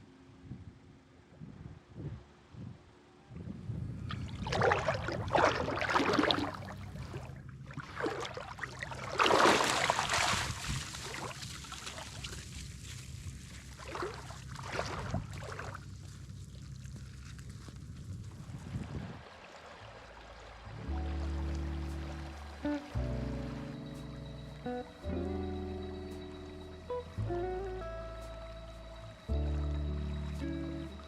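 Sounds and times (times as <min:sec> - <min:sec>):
boat motor humming: 0:04.0 - 0:17.9, 0:19.9 - 0:31.0
water splashing against hull: 0:04.0 - 0:24.7.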